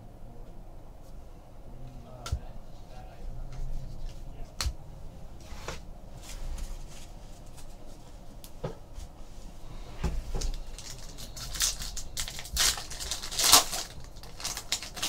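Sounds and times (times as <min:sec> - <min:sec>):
trading cards rustling: 0:10.4 - 0:15.0.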